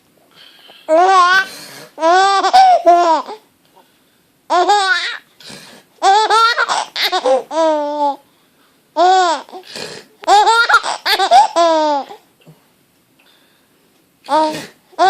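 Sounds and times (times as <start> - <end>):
baby laughing: 0.9 - 3.4, 4.5 - 5.3, 6.0 - 8.2, 9.0 - 9.6, 10.2 - 12.2, 14.3 - 15.0.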